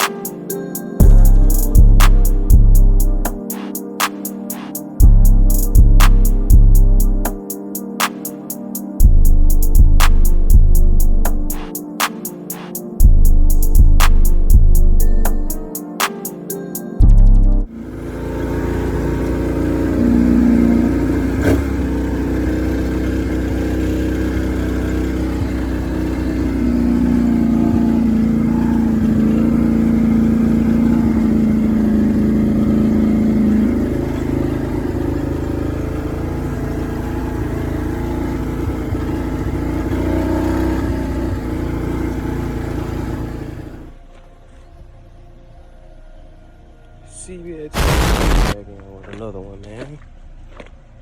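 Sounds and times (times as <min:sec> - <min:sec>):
vehicle engine running: 0:01.0 - 0:03.6, 0:04.9 - 0:07.5, 0:09.0 - 0:11.7, 0:13.0 - 0:15.7, 0:17.0 - 0:44.0, 0:47.8 - 0:48.6.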